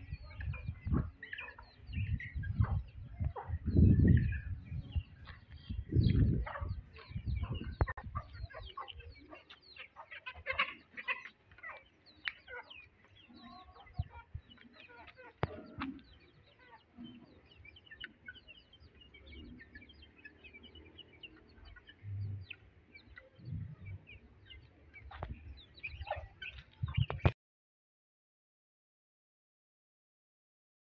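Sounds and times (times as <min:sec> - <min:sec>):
chicks peeping: 0:00.0 - 0:27.4
low bumps and rumbles: 0:02.0 - 0:08.2.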